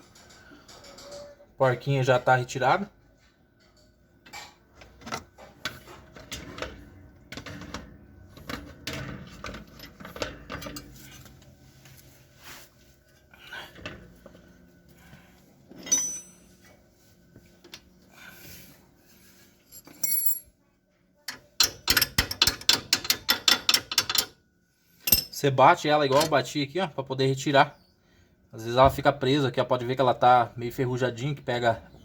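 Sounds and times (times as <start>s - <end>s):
metal tools clinking: 15.7s - 16.8s, 19.7s - 20.5s, 25.0s - 25.5s.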